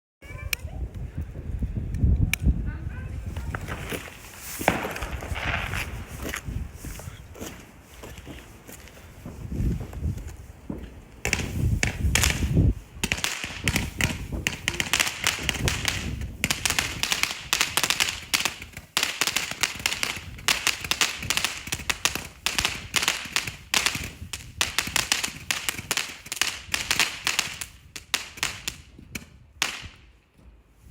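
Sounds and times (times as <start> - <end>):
firework crackling: 3.1 - 6.9, 10.5 - 28.9.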